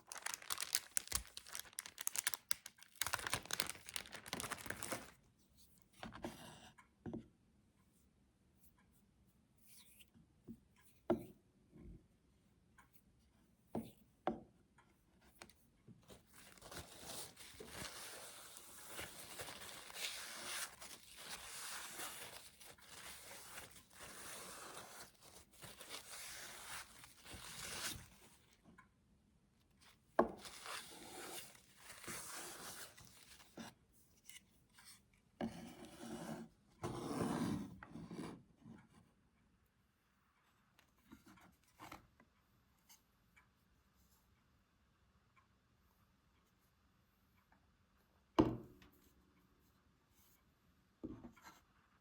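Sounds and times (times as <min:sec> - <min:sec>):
scraping and rustling handling: 0:00.0 - 0:05.2, 0:15.4 - 0:28.6, 0:30.2 - 0:33.7.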